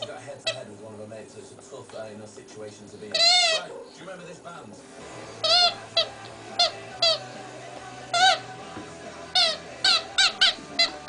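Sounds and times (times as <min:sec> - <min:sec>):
squeaky toy squeaking: 0:00.0 - 0:00.7, 0:03.1 - 0:03.8, 0:05.3 - 0:07.4, 0:08.1 - 0:08.5, 0:09.2 - 0:11.0.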